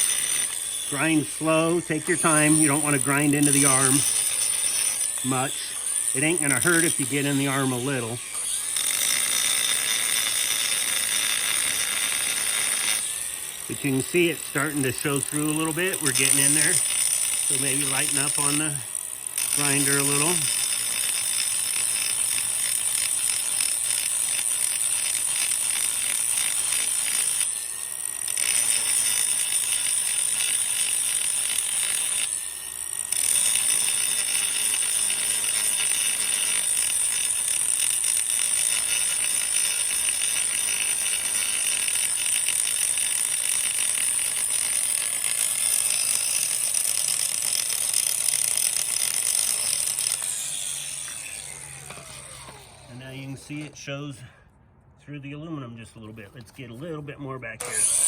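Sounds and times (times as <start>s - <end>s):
power grinder grinding metal: 0.0s - 53.9s, 57.6s - 58.0s.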